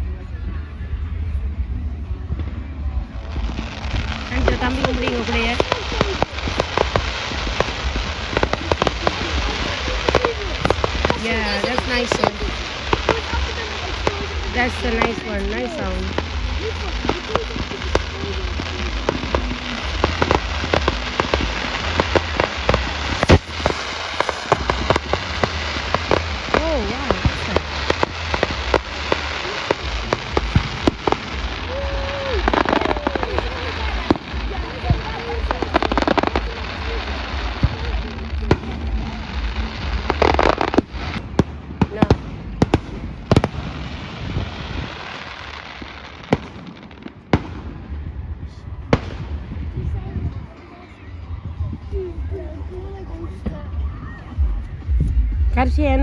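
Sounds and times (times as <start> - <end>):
firework bang: 3.2 - 48.2
rain pattering on an umbrella: 4.2 - 46.6.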